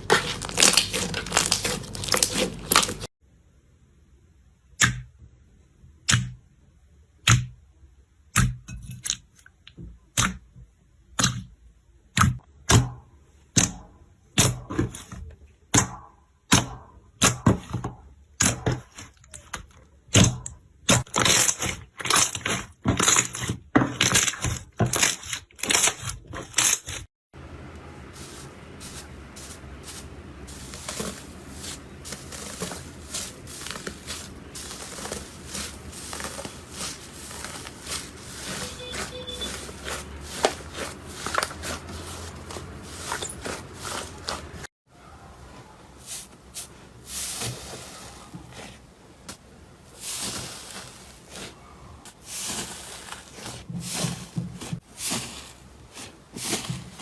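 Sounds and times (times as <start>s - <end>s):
slime crackling and popping: 0.0s - 3.1s, 30.5s - 41.9s
slime squishing: 0.0s - 3.1s, 15.9s - 27.0s, 28.0s - 44.7s, 45.8s - 57.0s.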